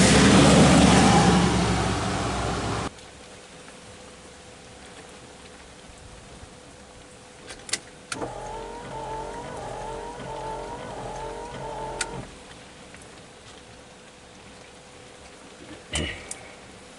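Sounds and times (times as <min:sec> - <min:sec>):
small electric motor whining: 0:08.2 - 0:12.4.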